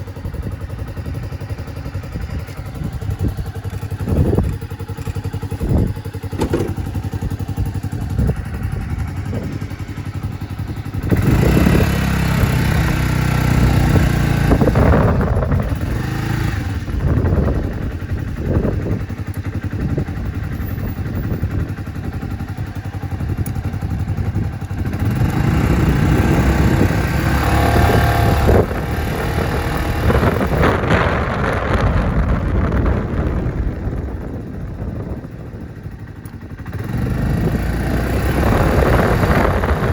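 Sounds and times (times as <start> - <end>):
scooter engine revving: 0.0 - 39.9
knocks and clatter: 6.3 - 7.0.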